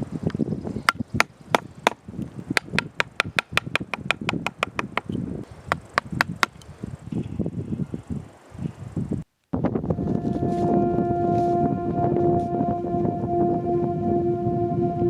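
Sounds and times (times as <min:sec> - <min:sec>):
mallet striking chisel into wood: 0:02.6 - 0:05.1.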